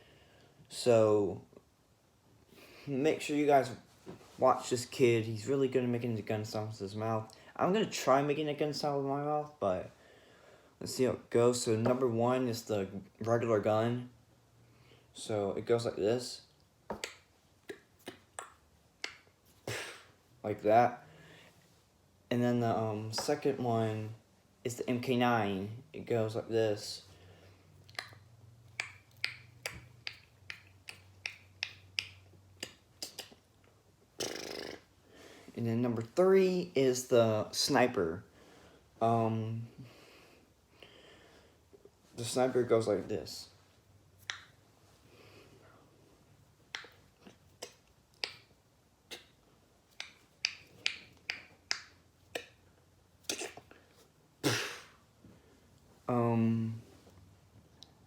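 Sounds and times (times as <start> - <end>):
sharp mouth clicks: 16.9 - 19.4, 27.8 - 34.9, 44.2 - 44.6, 46.7 - 52.6, 53.2 - 53.8.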